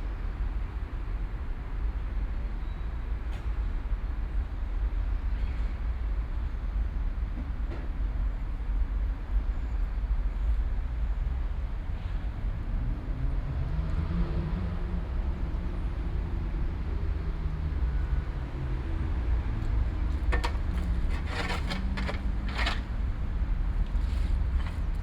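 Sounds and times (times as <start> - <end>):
distant road traffic rumble: 11.7 - 25.0.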